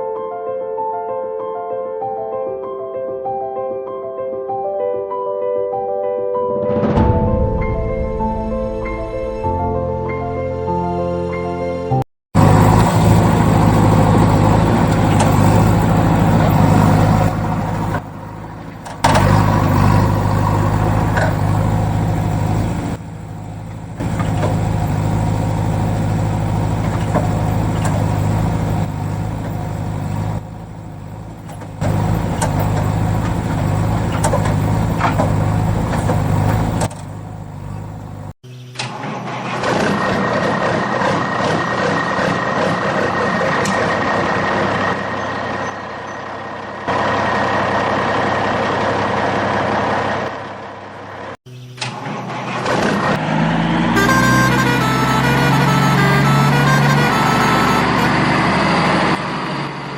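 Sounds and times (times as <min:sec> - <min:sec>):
heavy vehicle engine droning: 0:12.4 - 0:38.4, 0:39.1 - 0:59.9.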